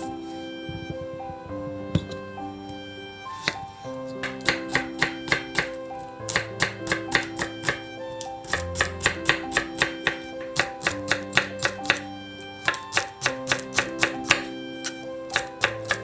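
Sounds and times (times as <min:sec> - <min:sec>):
knife chopping on cutting board: 0:03.4 - 0:16.0.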